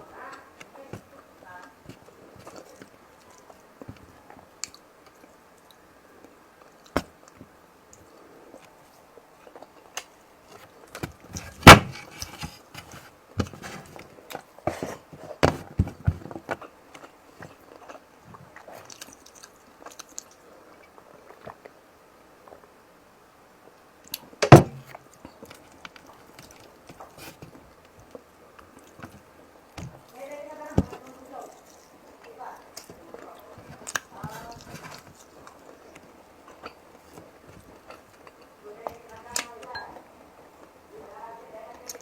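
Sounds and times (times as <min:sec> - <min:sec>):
loud sharp knocks: 0:11.6 - 0:12.1, 0:24.5 - 0:24.9
person chewing: 0:16.5 - 0:21.8, 0:31.0 - 0:38.6.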